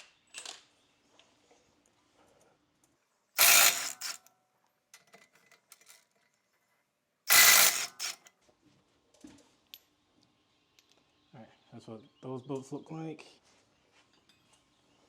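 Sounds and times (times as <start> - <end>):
ratchet wrench ratcheting: 3.4 - 4.2, 7.3 - 8.3.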